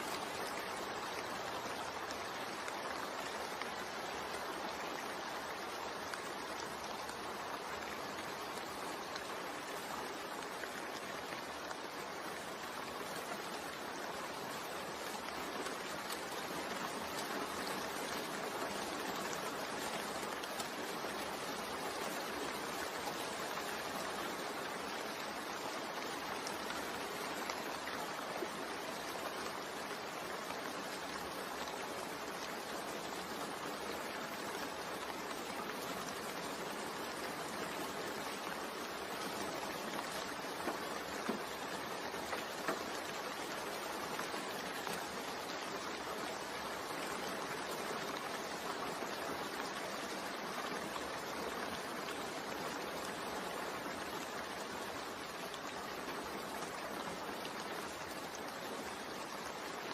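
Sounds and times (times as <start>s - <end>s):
steady rainfall: 0.0s - 59.9s.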